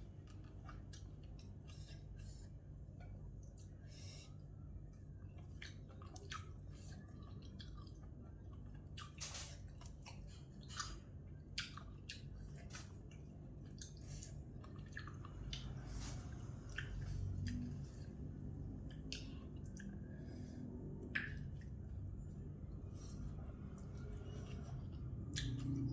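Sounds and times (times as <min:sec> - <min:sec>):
person chewing with wet smacks: 0:00.0 - 0:20.3, 0:20.9 - 0:25.9
faint low hum: 0:00.0 - 0:25.9.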